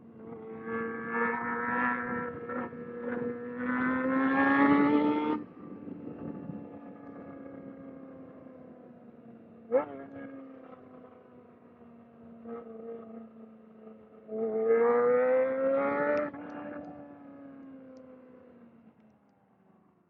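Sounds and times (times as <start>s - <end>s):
motorcycle engine revving: 0.2s - 5.5s, 14.3s - 17.0s.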